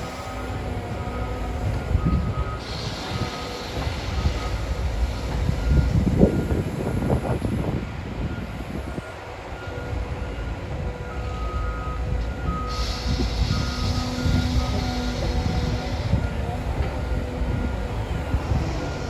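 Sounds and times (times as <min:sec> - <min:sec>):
excavator diesel rumble: 0:00.0 - 0:19.0
hiss: 0:02.5 - 0:06.5, 0:12.5 - 0:19.0.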